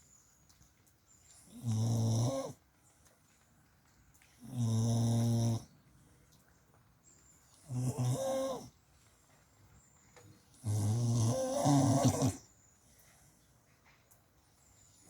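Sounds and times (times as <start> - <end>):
snoring: 4.5 - 5.7, 7.7 - 8.6, 10.6 - 12.4.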